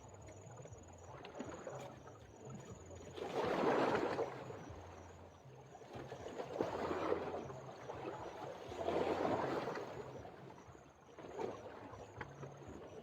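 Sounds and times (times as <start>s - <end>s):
water lapping: 5.9s - 10.6s.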